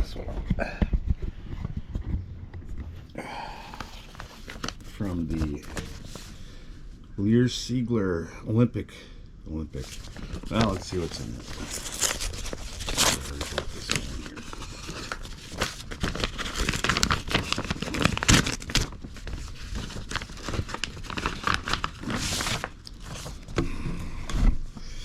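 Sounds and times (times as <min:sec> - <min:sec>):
paper envelope tearing and rustling: 0:03.8 - 0:06.4, 0:09.8 - 0:23.5.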